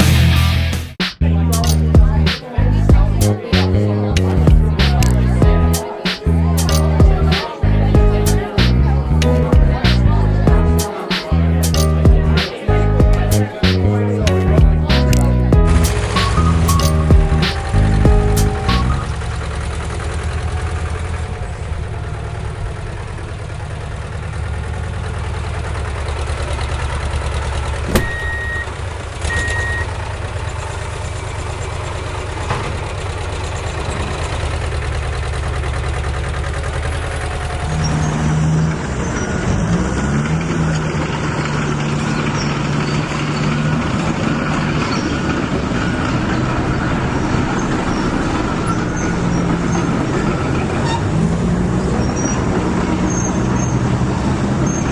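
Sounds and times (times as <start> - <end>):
truck engine running: 0.0 - 54.9
click: 15.1 - 15.3
short beeps: 27.9 - 30.0.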